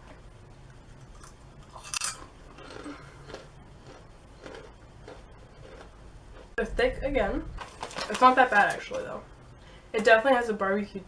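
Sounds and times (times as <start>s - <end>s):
person chewing crunchy snack: 1.2s - 6.6s.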